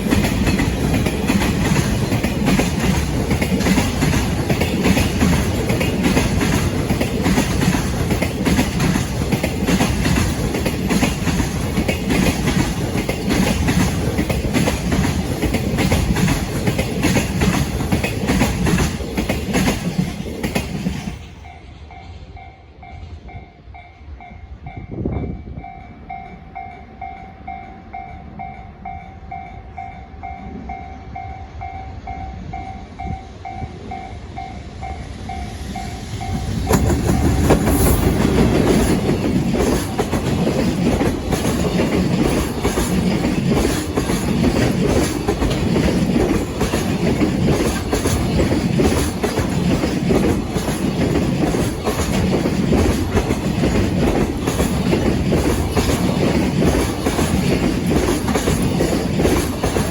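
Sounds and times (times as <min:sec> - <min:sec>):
freight train wheels clattering: 0:00.0 - 0:21.9, 0:33.2 - 0:59.9
level-crossing warning bell: 0:21.3 - 0:37.4.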